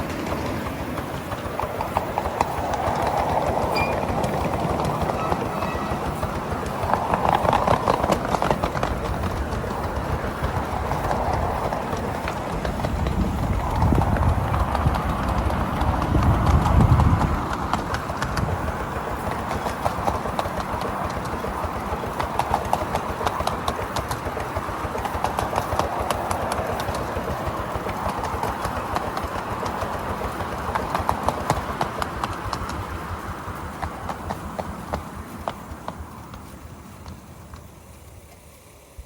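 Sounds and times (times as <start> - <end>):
low train rumble: 0.0 - 39.0
wheels clicking over rail joints: 0.0 - 39.0.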